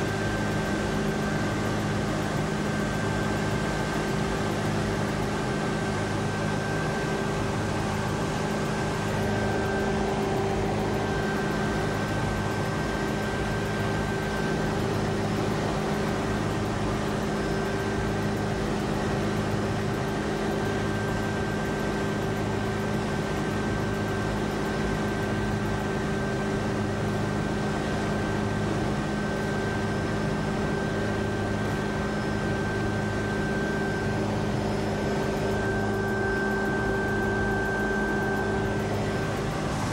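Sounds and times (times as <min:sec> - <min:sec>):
mechanical drone with hums: 0:00.0 - 0:39.9
low pulsing throb: 0:31.6 - 0:39.9.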